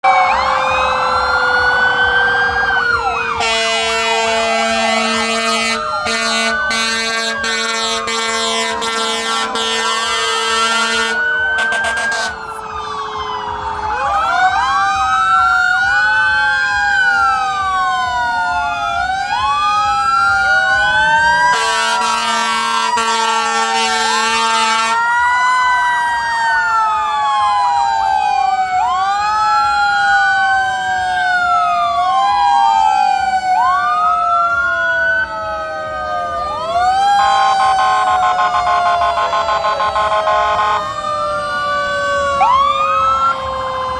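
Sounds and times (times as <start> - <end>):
fire truck sirens wailing: 0.0 - 43.9
air horn blasts: 3.3 - 12.6, 21.5 - 25.0, 37.6 - 41.0.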